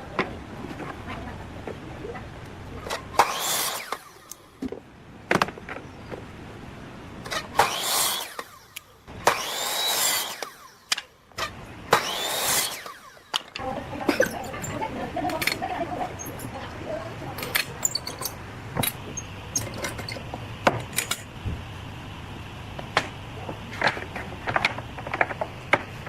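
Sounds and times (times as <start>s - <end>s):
tool working on wood: 2.8s - 4.4s, 7.3s - 16.5s.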